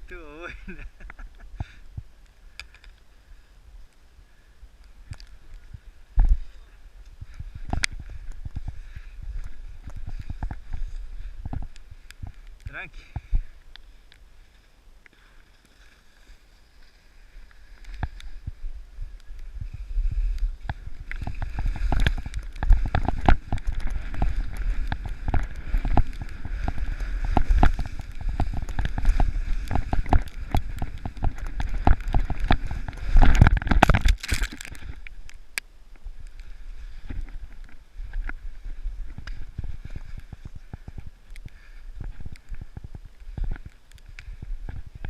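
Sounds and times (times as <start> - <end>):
wind rumbling on microphone: 0.0 - 15.0, 16.0 - 45.0
skis scraping on snow: 4.9 - 13.3, 13.9 - 33.6, 36.1 - 43.5.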